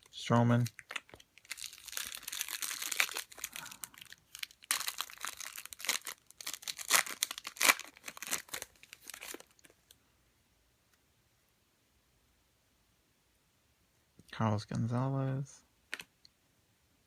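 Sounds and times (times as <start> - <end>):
foil wrapper crinkling and tearing: 0.0 - 9.8.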